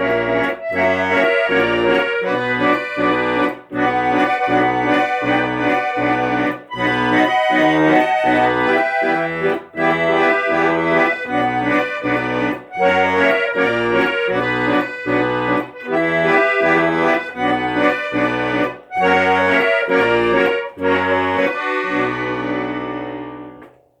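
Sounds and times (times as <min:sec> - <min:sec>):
rhythmic bass accompaniment: 0:00.0 - 0:23.7
instrumental melody: 0:00.0 - 0:24.0.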